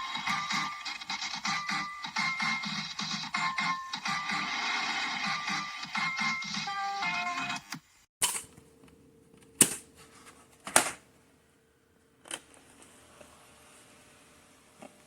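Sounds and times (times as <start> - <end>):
music from cassette player: 0.0 - 7.9.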